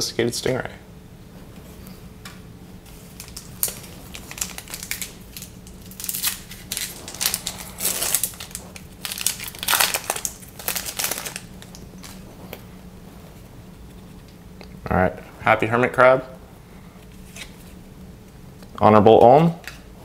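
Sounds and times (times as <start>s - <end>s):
wrapper crinkling: 2.9s - 12.3s.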